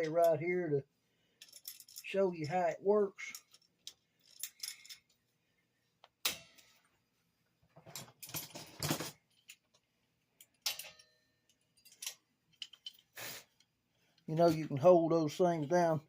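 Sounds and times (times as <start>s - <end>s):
metal pliers clinking and rattling: 1.4s - 2.6s, 3.2s - 5.2s, 7.8s - 13.1s.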